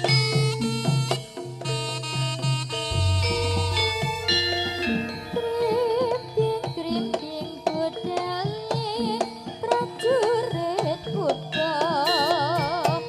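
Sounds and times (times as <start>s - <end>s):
hand-drum strokes: 2.5s - 9.8s
warbling melody line: 2.8s - 6.6s
gong-chime tones: 2.9s - 6.4s.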